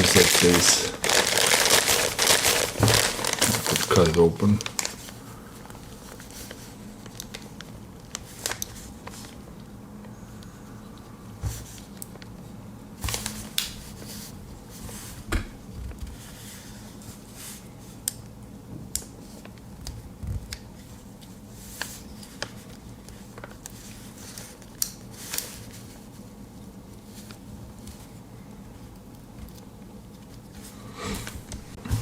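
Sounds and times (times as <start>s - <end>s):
cardboard package being handled: 0.0s - 5.2s, 8.1s - 9.3s
faint steady hum: 0.0s - 32.0s.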